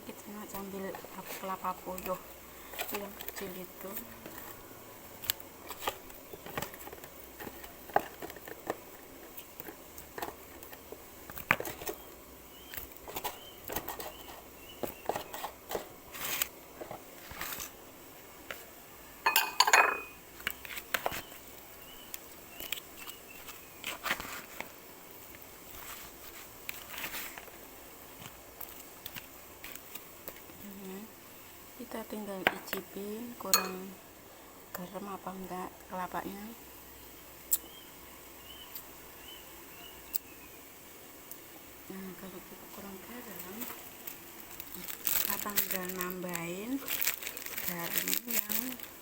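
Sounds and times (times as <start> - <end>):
kitchen utensils and dishes clattering: 19.3 - 20.2, 33.5 - 33.8.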